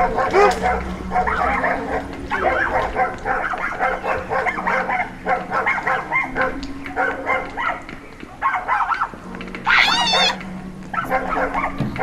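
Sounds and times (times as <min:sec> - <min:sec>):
dog yelping: 0:00.0 - 0:07.8, 0:08.4 - 0:09.1, 0:09.7 - 0:10.4
dogs barking: 0:00.0 - 0:12.0.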